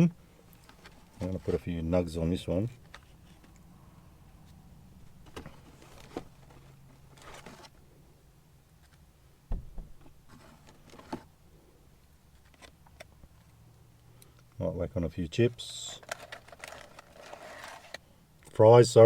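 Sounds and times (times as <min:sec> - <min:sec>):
food packaging rustling: 0:05.1 - 0:07.9, 0:15.9 - 0:18.0
dull thump: 0:09.5 - 0:10.1.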